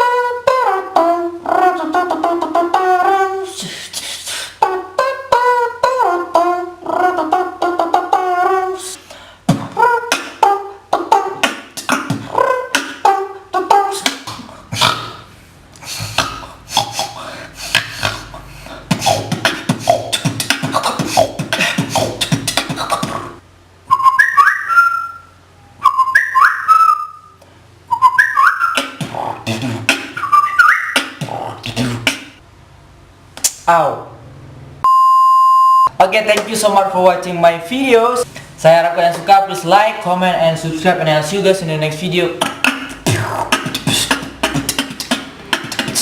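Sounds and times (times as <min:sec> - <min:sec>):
beatboxing mouth sounds: 0:00.0 - 0:24.3, 0:27.9 - 0:32.4, 0:33.4 - 0:33.8, 0:37.9 - 0:46.0
pitched vocal notes: 0:00.0 - 0:25.2, 0:25.8 - 0:32.4, 0:36.0 - 0:46.0
rising whistled chirps: 0:23.9 - 0:29.0, 0:30.2 - 0:31.1.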